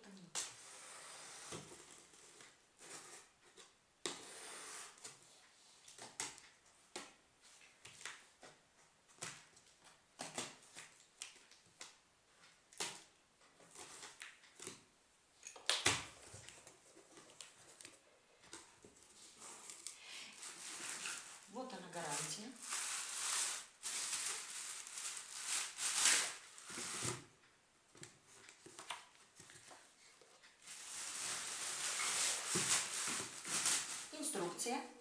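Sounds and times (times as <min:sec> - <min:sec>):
plastic packaging rustling: 0:16.1 - 0:27.3, 0:28.5 - 0:34.9.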